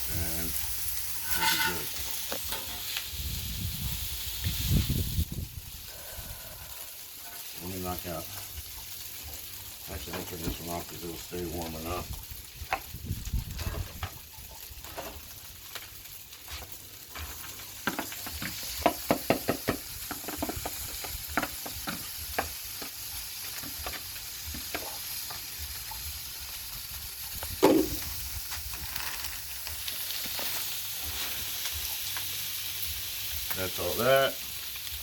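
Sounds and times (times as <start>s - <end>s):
food sizzling on a griddle: 0.0s - 35.0s
metal spatulas scraping and clacking: 1.2s - 2.9s.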